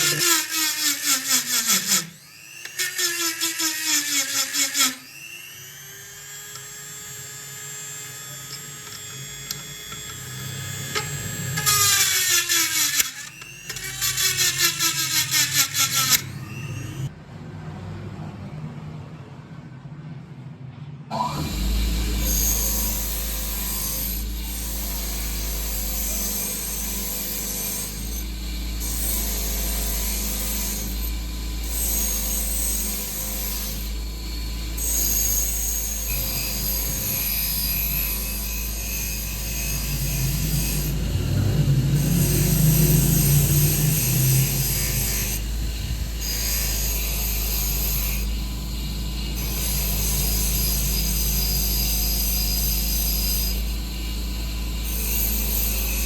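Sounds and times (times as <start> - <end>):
low rumbling: 39.2 - 46.6.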